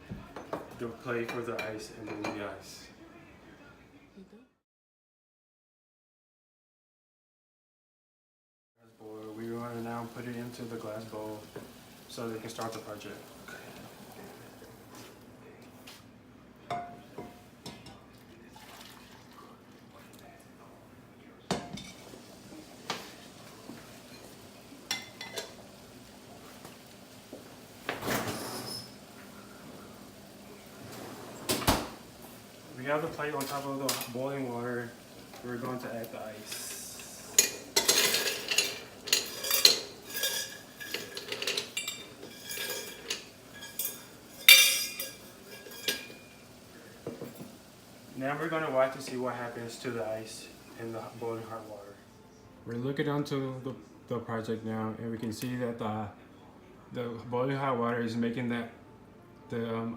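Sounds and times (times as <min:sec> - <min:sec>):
kitchenware clinking and knocking: 0:37.4 - 0:46.3.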